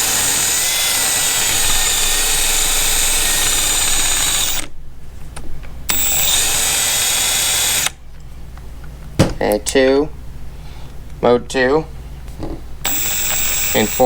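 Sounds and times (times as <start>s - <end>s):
impact wrench motor whine: 0.0s - 4.7s, 5.9s - 7.9s, 12.9s - 14.0s.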